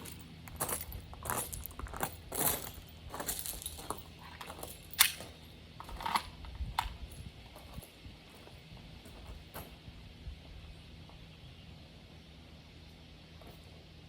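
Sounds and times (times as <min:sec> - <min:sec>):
small metal objects clinking: 0:00.0 - 0:05.3.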